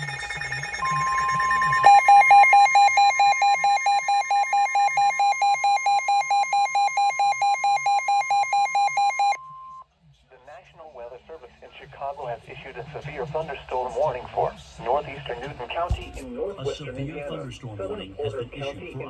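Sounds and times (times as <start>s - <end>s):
radio electronic alarm beeping: 0.0s - 9.8s
steady warning alarm tone: 0.0s - 9.8s.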